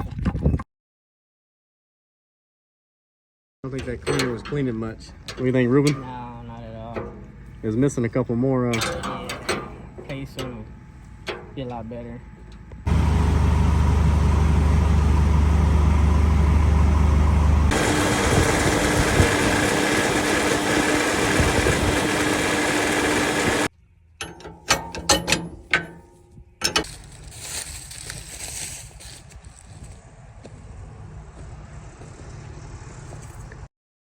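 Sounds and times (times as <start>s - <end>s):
farm machinery running: 12.9s - 23.7s, 26.6s - 30.0s
clicks and knocks: 24.2s - 26.9s.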